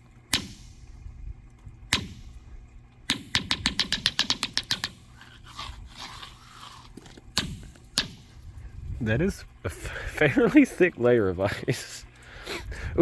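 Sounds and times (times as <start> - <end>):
ice skittering clicks: 3.3 - 8.4.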